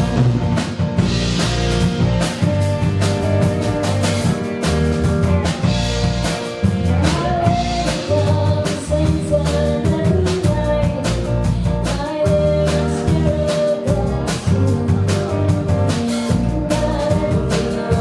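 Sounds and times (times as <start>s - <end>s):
drum kit beat: 0.0s - 18.0s
guitar: 0.0s - 18.0s
heavy bass line: 0.0s - 18.0s
person singing: 6.9s - 18.0s.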